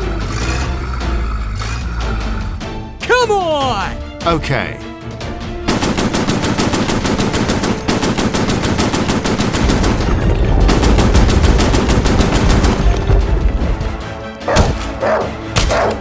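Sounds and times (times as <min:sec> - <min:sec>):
rapid machine-gun fire: 0:05.7 - 0:13.2
deep rumble: 0:09.6 - 0:14.1.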